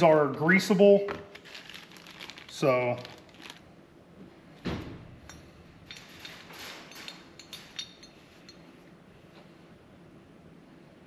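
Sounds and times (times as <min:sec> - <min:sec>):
metal parts clicking and clinking: 0:05.2 - 0:08.6.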